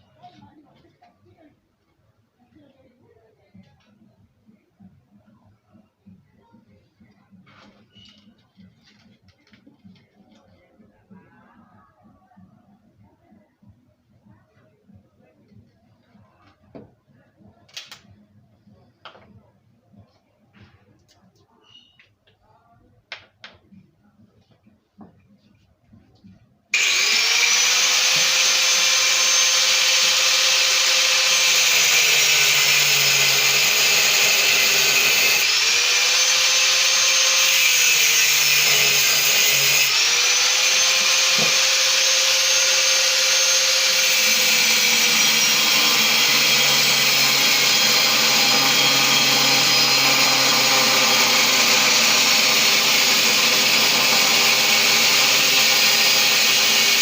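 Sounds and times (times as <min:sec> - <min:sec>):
electric power tool cutting: 0:26.8 - 0:57.0.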